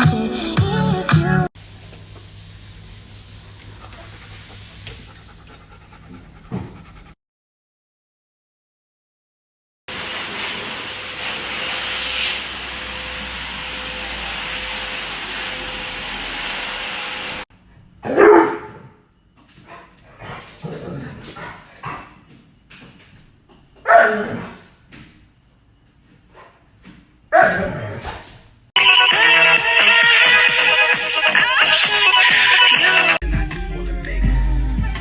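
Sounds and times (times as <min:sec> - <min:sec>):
dog barking loudly: 0:18.0 - 0:18.8, 0:23.9 - 0:24.5, 0:27.3 - 0:27.8.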